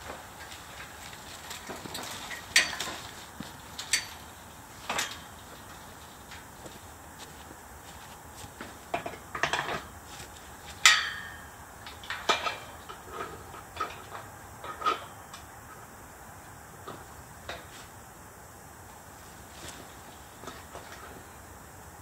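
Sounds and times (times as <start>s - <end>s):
sharp metallic clank: 10.8s - 11.6s.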